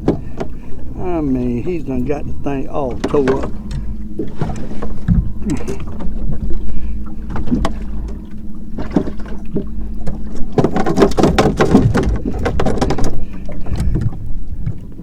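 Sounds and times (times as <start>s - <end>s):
boat motor humming: 0.0s - 15.0s
knocks: 10.5s - 14.2s.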